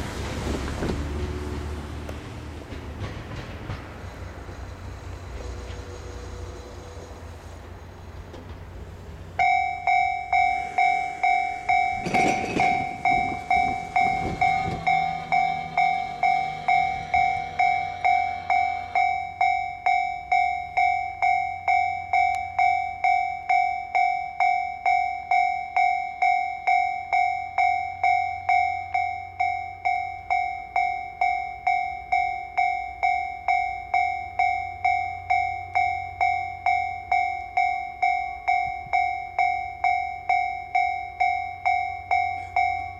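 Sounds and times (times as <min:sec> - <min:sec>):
rushing noise: 0:00.0 - 0:20.3
level-crossing warning bell: 0:09.3 - 0:42.9.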